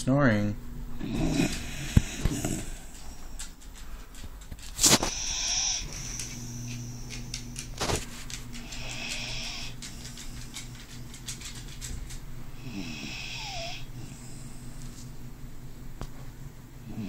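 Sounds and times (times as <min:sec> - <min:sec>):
dog snoring: 0:01.0 - 0:03.5, 0:04.8 - 0:11.8, 0:12.6 - 0:14.8.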